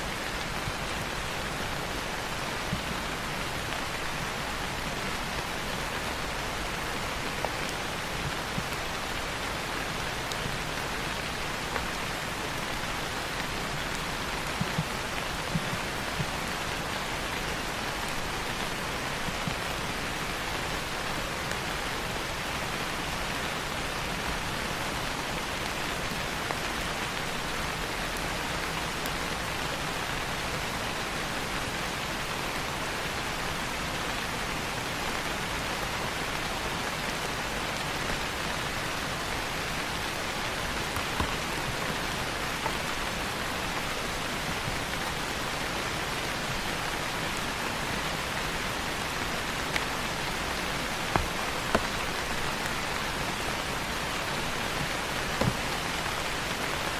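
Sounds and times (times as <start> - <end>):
steady rain: 0.0 - 56.9.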